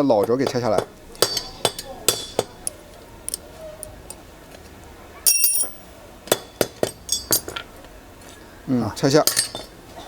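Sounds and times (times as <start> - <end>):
metal tools clinking and tapping: 0.0 - 3.4, 5.3 - 7.7, 9.2 - 9.8.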